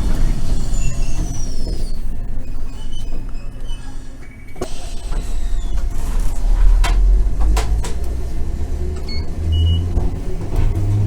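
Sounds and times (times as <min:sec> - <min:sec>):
tram rumbling: 0:00.0 - 0:11.0
wheels clacking: 0:04.6 - 0:11.0.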